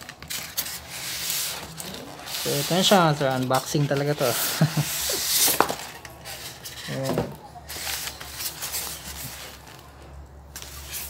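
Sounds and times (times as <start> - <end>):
packaging rustling: 0.0 - 11.0.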